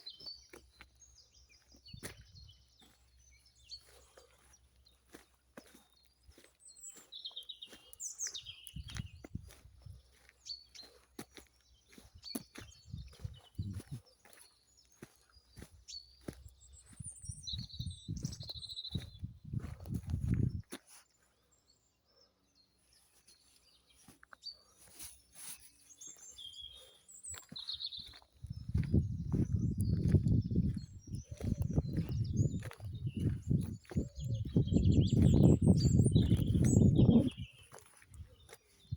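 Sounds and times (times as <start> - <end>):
birds chirping: 0.0 - 38.9
high bird chirps: 26.0 - 38.5.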